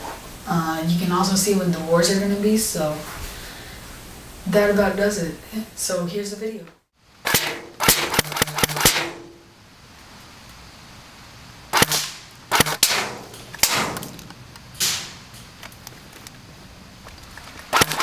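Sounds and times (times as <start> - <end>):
airsoft gun shots: 7.2 - 9.4, 11.7 - 15.3, 17.7 - 18.0.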